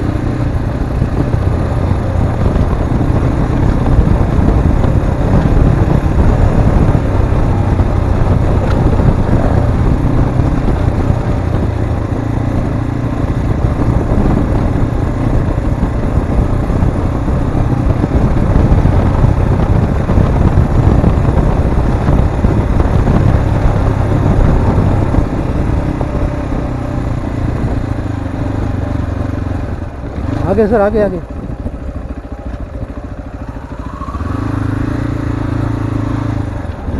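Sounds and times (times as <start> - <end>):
motorcycle engine running: 0.0 - 36.9.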